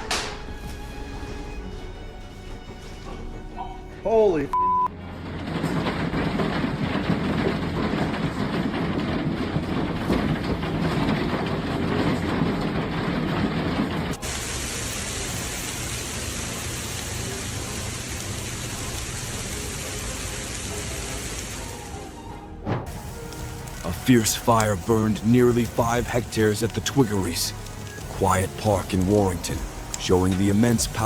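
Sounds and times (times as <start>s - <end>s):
heavy rain: 13.4s - 22.2s, 22.9s - 31.0s.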